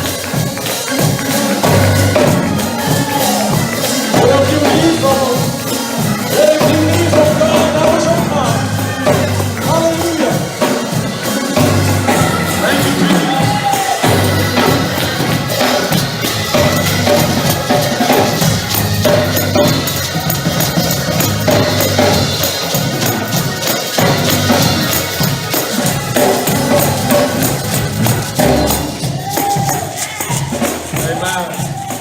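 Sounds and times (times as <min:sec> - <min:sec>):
drums and tambourine beat: 0:00.0 - 0:32.0
bass line: 0:01.5 - 0:10.5, 0:11.5 - 0:22.4, 0:24.0 - 0:30.5.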